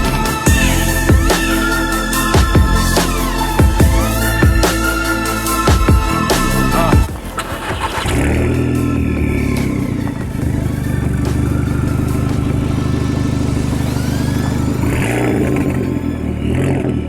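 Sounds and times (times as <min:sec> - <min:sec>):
car engine with loud exhaust: 0:05.8 - 0:17.0.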